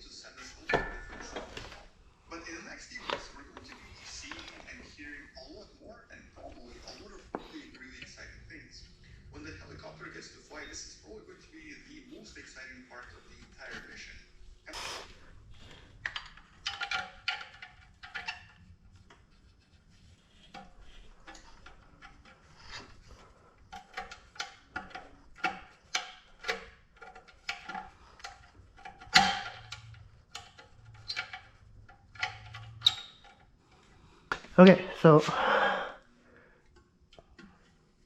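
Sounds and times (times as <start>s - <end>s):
metallic clinks and knocks: 0.6s - 1.8s, 16.1s - 18.6s, 20.5s - 33.5s.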